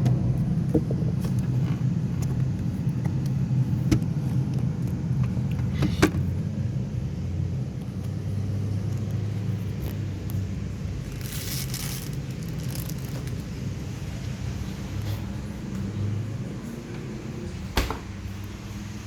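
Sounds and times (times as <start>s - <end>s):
refrigerator humming: 0.0s - 19.0s
refrigerator clicks: 17.6s - 18.6s.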